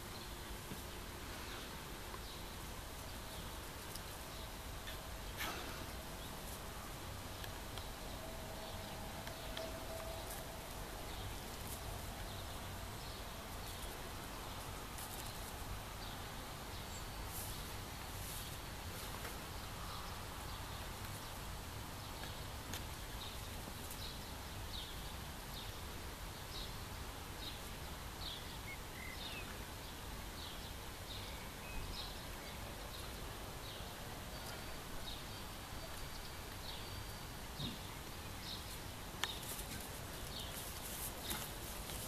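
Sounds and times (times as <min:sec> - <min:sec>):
steady background hiss: 0:00.0 - 0:42.0
bird chirping: 0:04.3 - 0:17.7.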